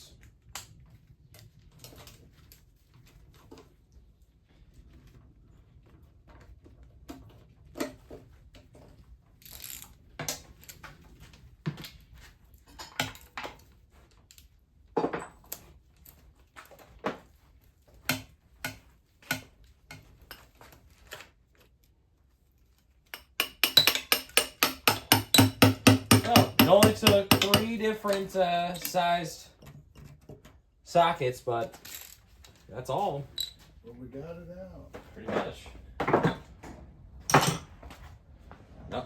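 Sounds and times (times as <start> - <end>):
metal tools clinking: 23.5 - 29.3
fast regular beat: 25.1 - 28.0.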